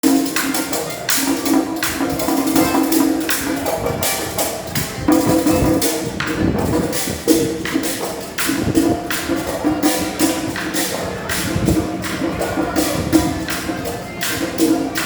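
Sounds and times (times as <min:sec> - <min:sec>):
music with jangling percussion: 0:00.0 - 0:15.0.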